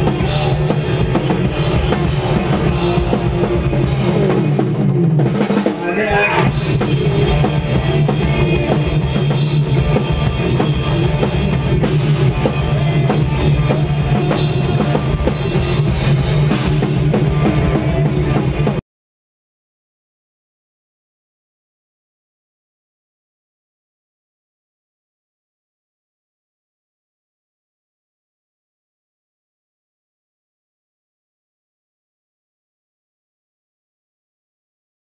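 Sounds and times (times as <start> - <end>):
live rock band playing: 0.0 - 18.8
pounding drum kit: 0.0 - 18.8.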